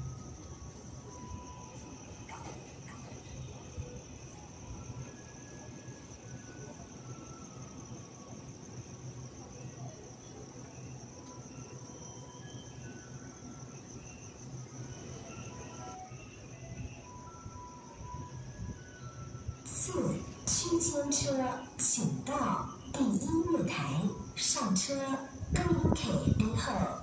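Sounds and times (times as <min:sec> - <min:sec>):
crickets chirring: 0:00.0 - 0:27.0.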